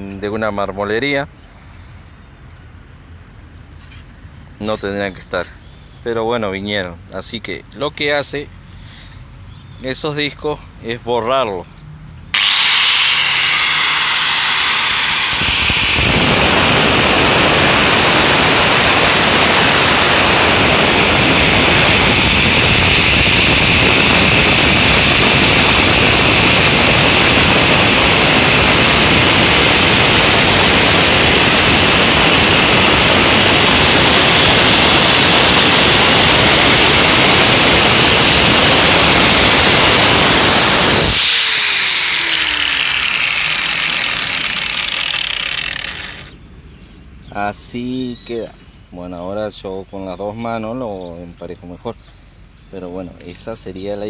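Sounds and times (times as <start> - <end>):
angle grinder grinding stone: 12.4 - 18.0, 20.9 - 34.9, 38.2 - 46.4.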